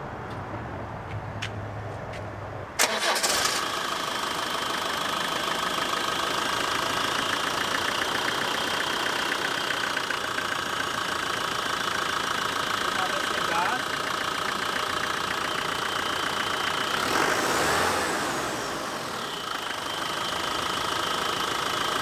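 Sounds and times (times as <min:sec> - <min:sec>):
starter cranking engine: 0:02.8 - 0:04.0
engine idling: 0:02.8 - 0:22.0.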